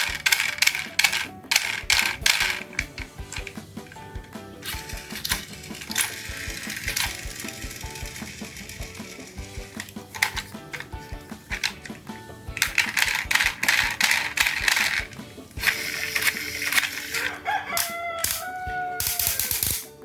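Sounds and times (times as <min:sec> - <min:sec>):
plastic toy vehicles clattering: 0:00.0 - 0:20.0
rooster crowing: 0:17.1 - 0:19.6.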